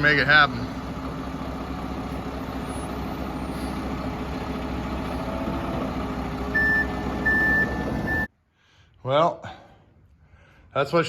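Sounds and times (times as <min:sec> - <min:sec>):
truck engine running: 0:00.0 - 0:08.3.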